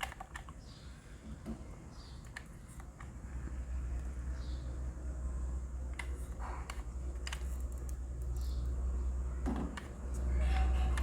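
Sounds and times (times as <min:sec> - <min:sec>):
scattered clicks: 0:05.9 - 0:08.8.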